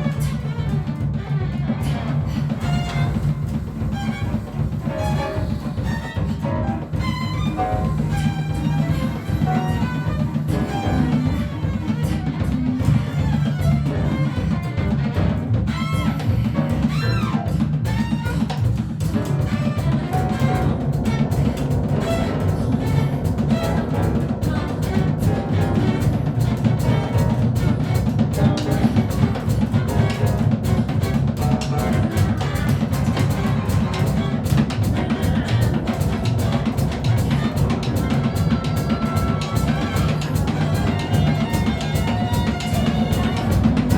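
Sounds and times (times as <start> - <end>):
drum kit rhythm: 0.0 - 43.9
sliding high notes: 19.1 - 43.9
sustained low tones: 19.1 - 43.9.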